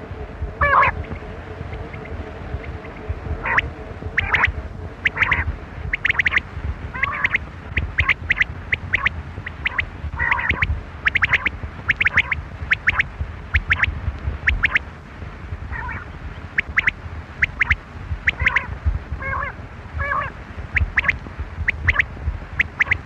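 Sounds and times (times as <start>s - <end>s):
low rumbling background noise: 0.0s - 23.0s
quail calling: 0.6s - 1.0s, 4.2s - 6.4s, 7.0s - 13.0s, 13.6s - 13.9s, 14.5s - 14.8s, 15.7s - 16.0s, 16.6s - 22.0s, 22.6s - 23.0s.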